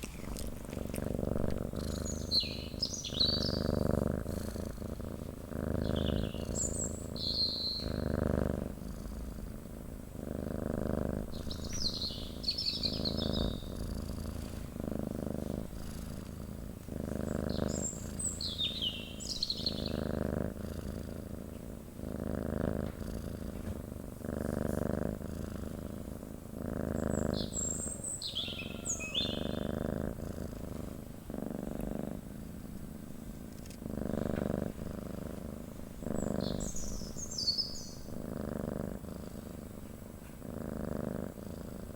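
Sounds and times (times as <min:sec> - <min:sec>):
cat purring: 0:00.0 - 0:41.9
high bird chirps: 0:05.9 - 0:08.0, 0:17.6 - 0:19.9, 0:27.4 - 0:29.6, 0:36.4 - 0:38.0.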